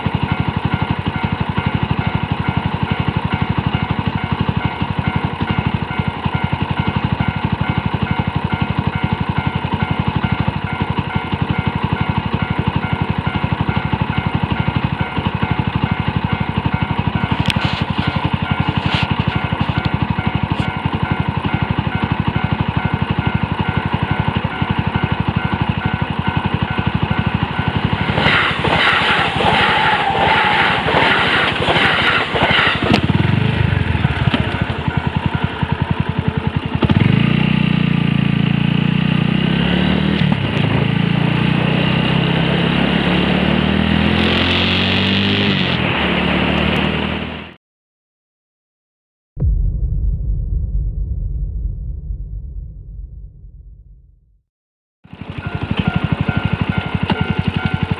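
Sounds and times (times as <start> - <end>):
crossing warning bell ringing: 0.0 - 39.5, 55.1 - 57.9
motorcycle engine idling: 33.0 - 39.4
low drone rising in pitch: 37.0 - 47.5, 49.4 - 54.4.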